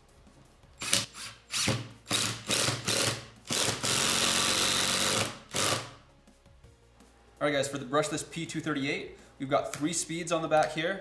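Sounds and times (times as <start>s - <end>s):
impact driver driving screw: 0.8s - 6.0s.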